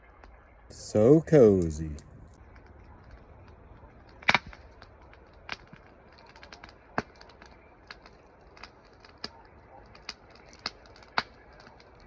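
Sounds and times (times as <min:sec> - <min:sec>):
wood fire crackling: 0:00.7 - 0:02.0.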